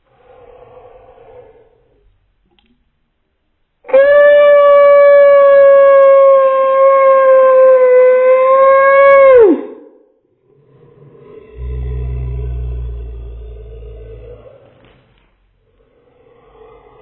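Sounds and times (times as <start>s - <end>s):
slowed-down vocal cry: 10.6s - 15.0s.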